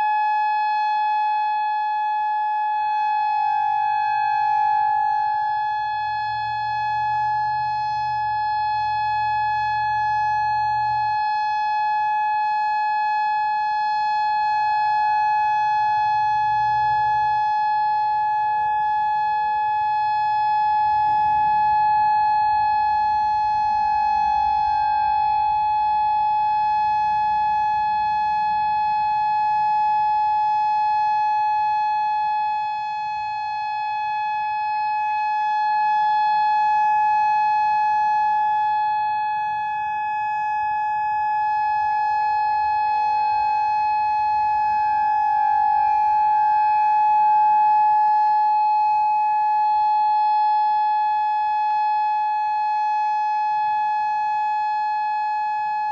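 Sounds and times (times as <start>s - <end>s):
outdoor warning siren steady tone: 0.0s - 55.9s.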